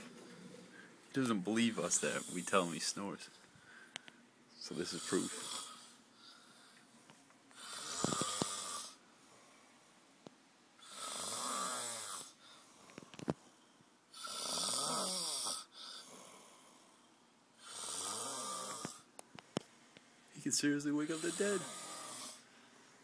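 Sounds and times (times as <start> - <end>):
quiet breathing: 0.0 - 10.1, 10.8 - 14.2, 15.0 - 23.0
man snoring loudly: 4.7 - 6.0, 7.6 - 9.0, 10.8 - 12.4, 14.2 - 16.6, 17.6 - 19.1, 21.0 - 22.5.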